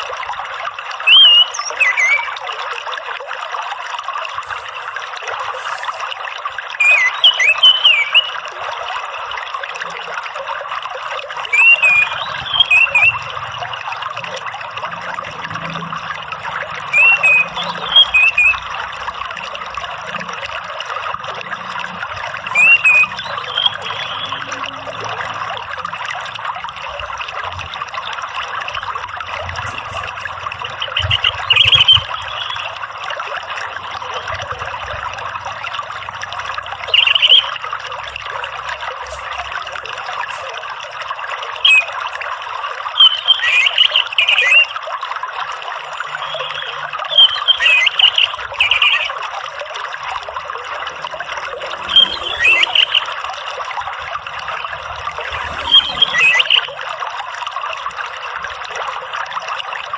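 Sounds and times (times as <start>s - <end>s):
water trickling: 0.0s - 59.9s
bird singing whistled phrases: 1.1s - 2.4s, 6.8s - 8.4s, 11.3s - 13.3s, 16.9s - 18.6s, 22.5s - 24.7s, 29.6s - 32.8s, 36.9s - 37.6s, 41.6s - 42.0s, 43.0s - 44.8s, 46.2s - 49.2s, 51.8s - 53.1s, 55.5s - 56.7s.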